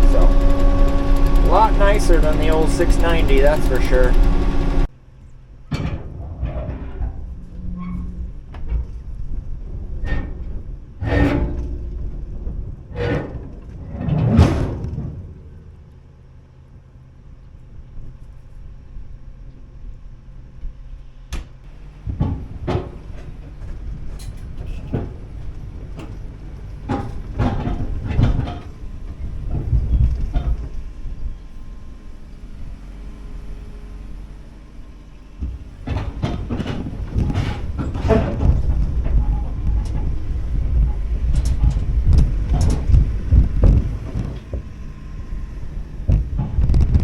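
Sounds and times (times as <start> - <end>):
machine clanks and knocks: 0.0 - 4.9, 5.7 - 7.6, 8.4 - 15.8, 21.3 - 31.2, 35.4 - 45.3
excavator diesel engine running: 0.0 - 47.0.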